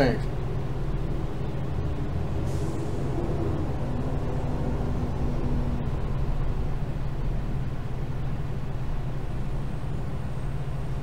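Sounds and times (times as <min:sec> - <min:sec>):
fan and air conditioner hum: 0:00.0 - 0:11.0.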